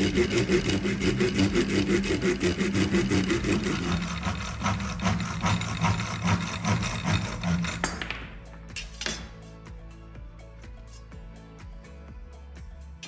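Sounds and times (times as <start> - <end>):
saw cutting wood: 0.0 - 8.3.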